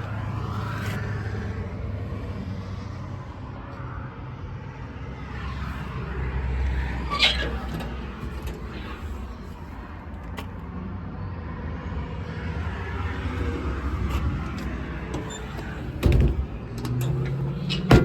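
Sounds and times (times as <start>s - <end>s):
low engine rumble: 5.5s - 10.7s, 12.5s - 18.0s
sharp squeak or clank: 7.0s - 9.5s, 14.0s - 18.0s.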